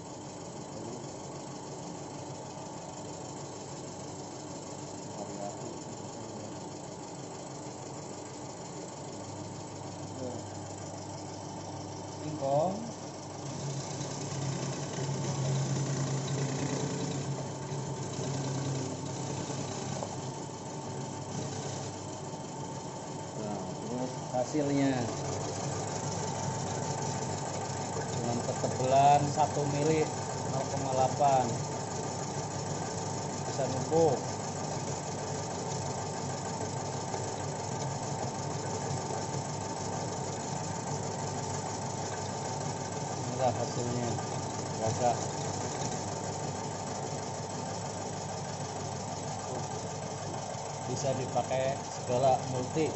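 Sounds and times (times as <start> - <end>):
slicing machine motor humming: 7.9 - 52.9.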